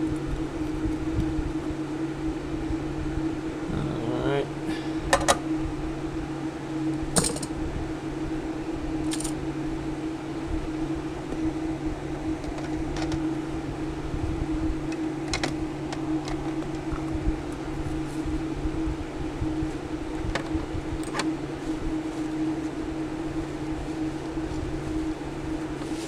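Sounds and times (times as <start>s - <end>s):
steady machine hum: 0.0s - 26.0s.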